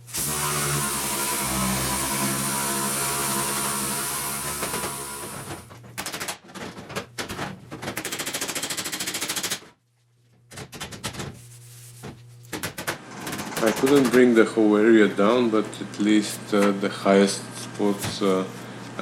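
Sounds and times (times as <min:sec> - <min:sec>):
power tool winding down: 0:00.1 - 0:05.6.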